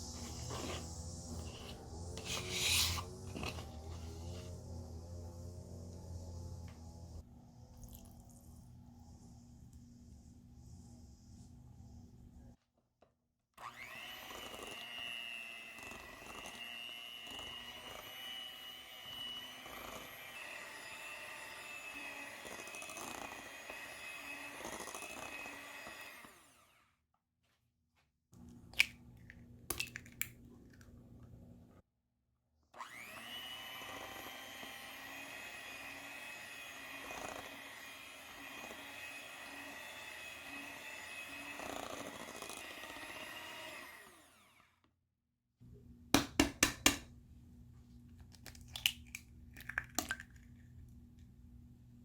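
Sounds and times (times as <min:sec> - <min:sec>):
electric kitchen mixer whining: 0:00.0 - 0:07.4, 0:13.6 - 0:27.0, 0:32.8 - 0:44.9.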